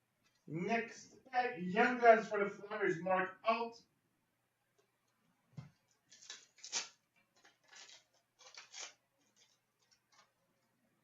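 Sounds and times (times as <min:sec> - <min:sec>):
trading cards being shuffled: 0:06.0 - 0:10.4.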